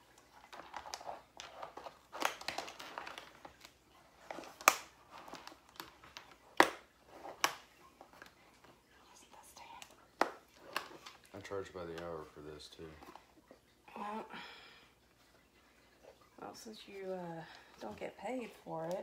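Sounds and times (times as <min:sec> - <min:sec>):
packaging crinkling and rustling: 0:00.0 - 0:08.9, 0:10.1 - 0:13.8.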